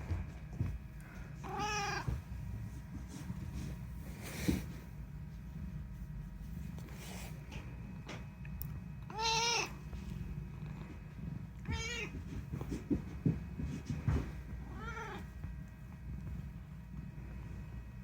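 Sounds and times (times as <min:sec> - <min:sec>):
cat meowing: 0:01.4 - 0:02.1, 0:09.1 - 0:09.8, 0:11.7 - 0:12.1, 0:14.8 - 0:15.2.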